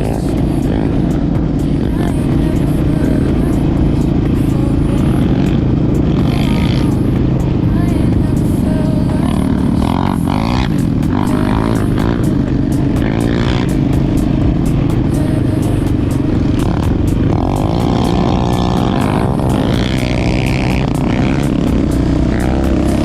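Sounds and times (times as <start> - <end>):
quad bike engine revving: 0.0 - 23.0.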